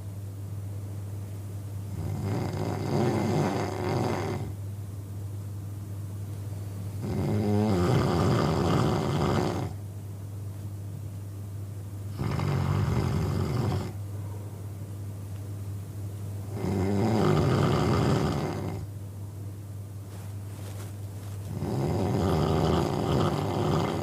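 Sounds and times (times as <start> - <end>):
man snoring: 1.9 - 4.6, 7.0 - 9.8, 12.1 - 14.0, 16.5 - 18.9, 21.5 - 24.0.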